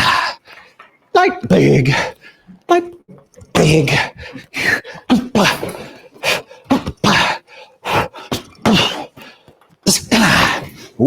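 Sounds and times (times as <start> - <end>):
person grunting: 5.0 - 9.4.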